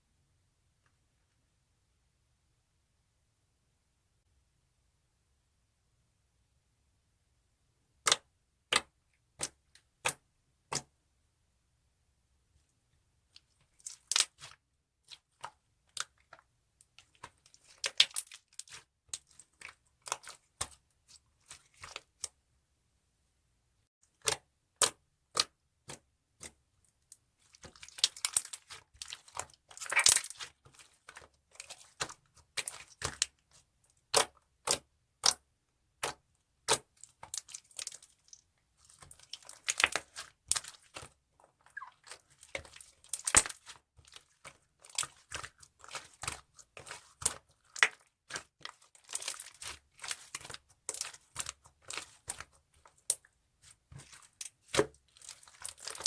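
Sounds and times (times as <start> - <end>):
sticky crackling slime: 17.0 - 20.8, 27.4 - 35.4, 36.0 - 56.0.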